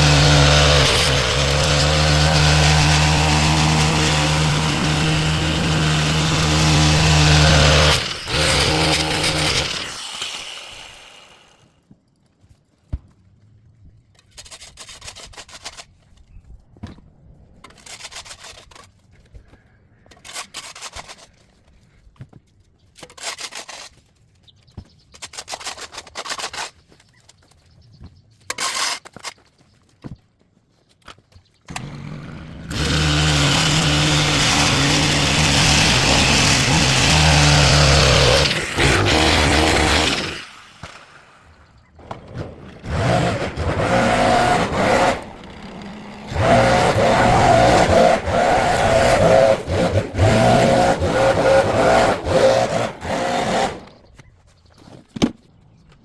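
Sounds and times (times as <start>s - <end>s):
small engine running: 0.0s - 11.6s, 31.7s - 41.1s, 42.6s - 54.0s
short scraping and rubbing: 42.3s - 55.2s.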